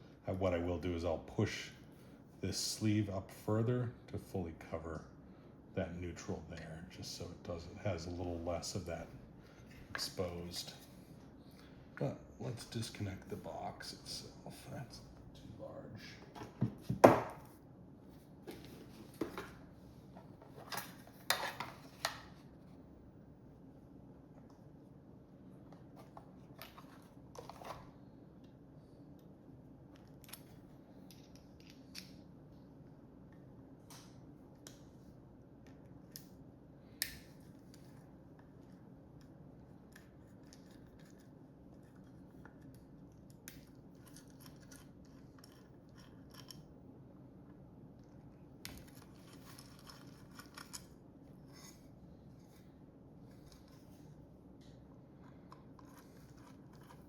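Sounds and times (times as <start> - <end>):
low steady hum: 0.0 - 57.0.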